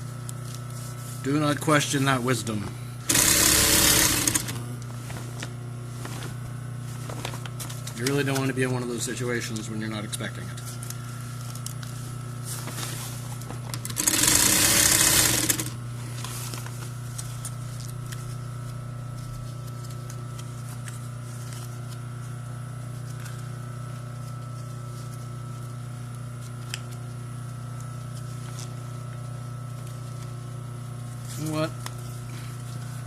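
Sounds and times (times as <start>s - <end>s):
electric sewing machine stitching: 3.0s - 4.6s, 13.9s - 15.8s.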